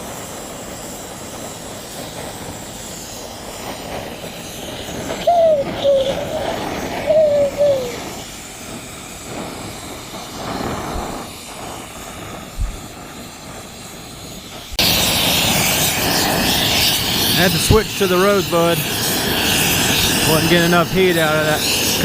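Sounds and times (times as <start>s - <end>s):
loud rushing hiss of heating tip: 0.0s - 22.0s
torch flame hissing: 0.0s - 22.0s
short wavering tones: 5.3s - 8.1s.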